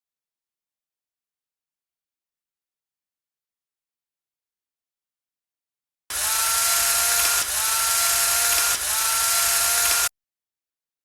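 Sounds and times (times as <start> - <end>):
loud electric buzz with hiss: 6.1 - 10.1.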